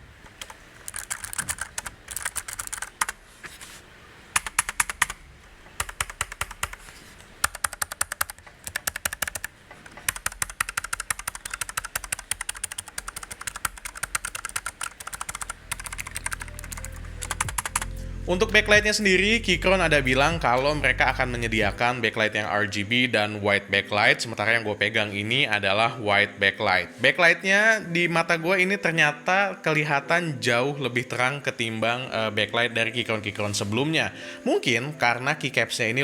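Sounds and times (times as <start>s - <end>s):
typing on mechanical keyboard: 0.2s - 3.2s, 4.4s - 5.2s, 5.8s - 17.9s
low hum: 15.4s - 22.0s.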